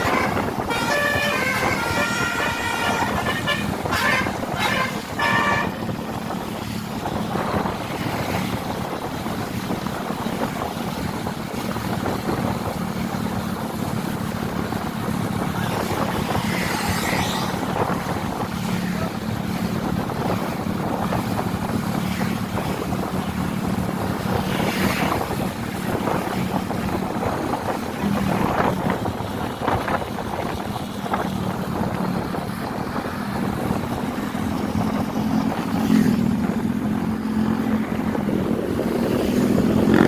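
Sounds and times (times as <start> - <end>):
bus engine running: 0.0 - 16.5
road noise: 0.0 - 40.0
wind buffeting microphone: 0.0 - 40.0.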